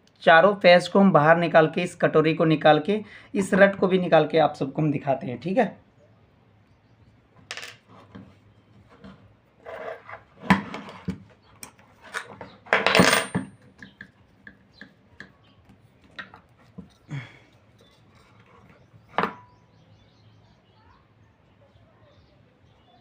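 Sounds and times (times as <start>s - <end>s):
metal parts clicking and clattering: 11.6s - 14.0s.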